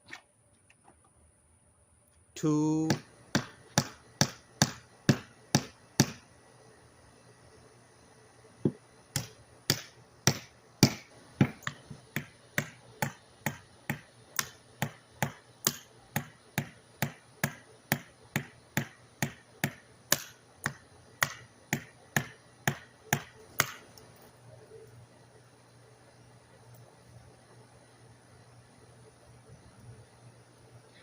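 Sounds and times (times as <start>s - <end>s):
hammer driving nails into wood: 2.9s - 6.2s, 8.7s - 23.9s.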